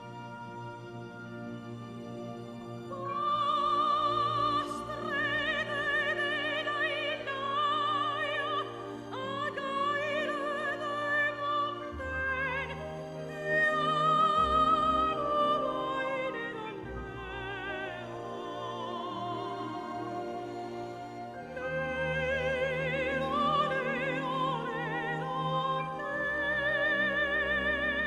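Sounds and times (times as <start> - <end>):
operatic singing: 0.0 - 28.0
orchestral music: 0.0 - 28.0.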